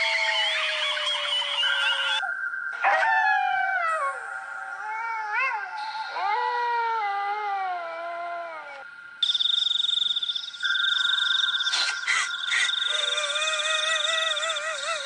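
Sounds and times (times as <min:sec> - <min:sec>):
dog howling: 0:00.0 - 0:08.8, 0:12.5 - 0:15.0
shrill steady trill: 0:09.2 - 0:15.0.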